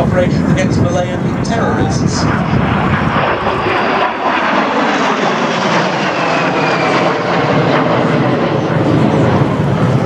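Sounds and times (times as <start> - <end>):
jet passing with loud rushing: 0.0 - 10.0.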